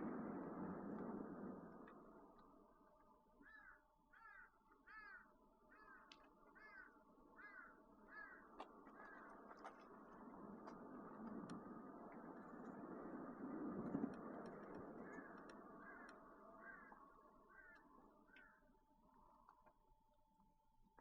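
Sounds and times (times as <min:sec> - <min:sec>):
crow cawing: 0:03.4 - 0:09.4, 0:15.0 - 0:18.6
light ticks: 0:06.0 - 0:06.6, 0:08.5 - 0:17.1.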